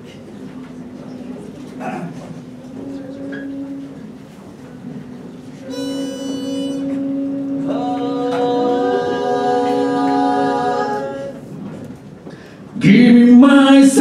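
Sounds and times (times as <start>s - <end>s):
a cappella group singing: 7.4s - 11.6s, 12.8s - 14.0s.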